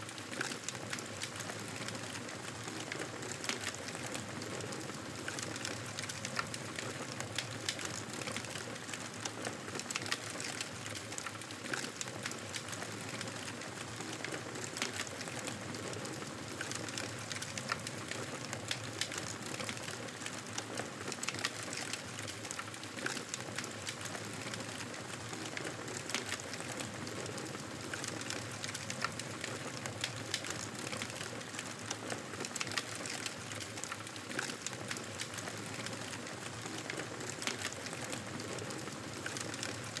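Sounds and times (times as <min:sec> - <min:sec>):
fire crackling and hissing: 0:00.0 - 0:40.0.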